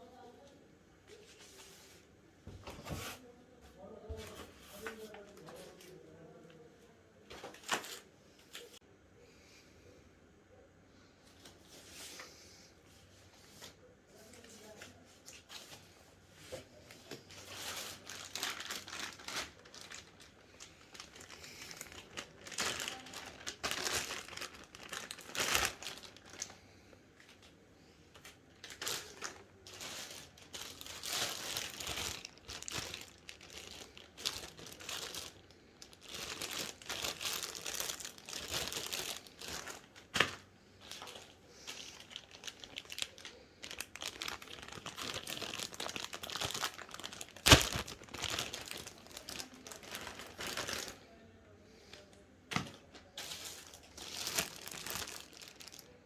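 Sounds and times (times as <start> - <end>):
plastic and foam packaging crinkling: 13.5 - 51.1, 52.4 - 56.0.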